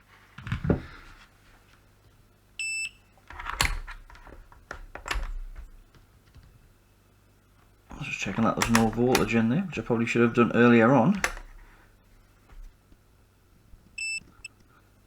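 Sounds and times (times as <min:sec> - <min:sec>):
multimeter beeping: 0:02.6 - 0:03.0, 0:14.0 - 0:14.6
clicks and knocks of test probes: 0:08.4 - 0:09.4.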